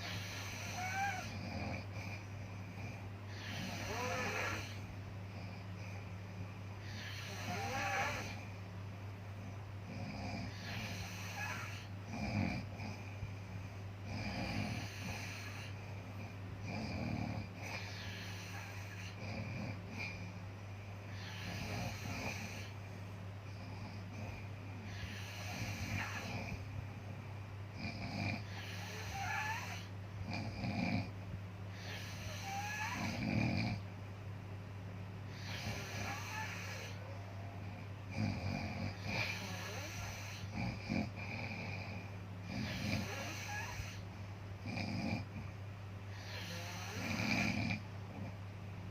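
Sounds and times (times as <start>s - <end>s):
person snoring: 0.0s - 6.1s, 6.8s - 8.6s, 9.8s - 13.2s, 14.0s - 20.4s, 21.1s - 22.8s, 23.5s - 26.7s, 27.8s - 31.1s, 31.7s - 33.8s, 35.3s - 44.0s, 46.1s - 48.3s
steady low hum: 0.0s - 48.9s.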